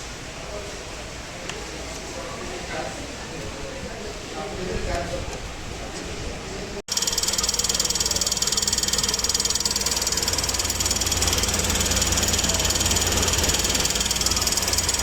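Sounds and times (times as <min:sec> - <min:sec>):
rapid engine ticking: 0:06.9 - 0:15.0
car engine idling: 0:07.0 - 0:15.0.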